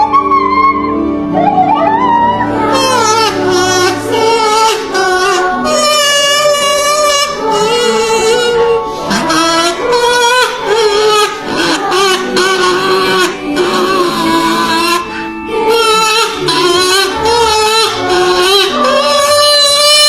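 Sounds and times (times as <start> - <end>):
instrumental accompaniment: 0.0 - 20.0
woman singing with vibrato: 0.0 - 20.0.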